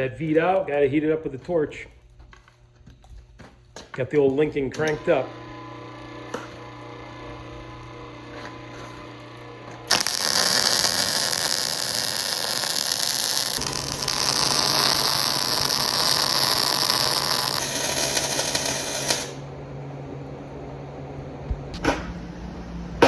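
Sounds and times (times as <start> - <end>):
arc welding crackling hiss: 6.2 - 19.5.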